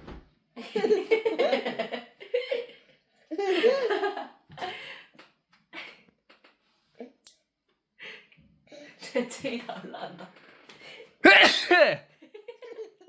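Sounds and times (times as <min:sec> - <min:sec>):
person laughing: 0:11.2 - 0:12.0.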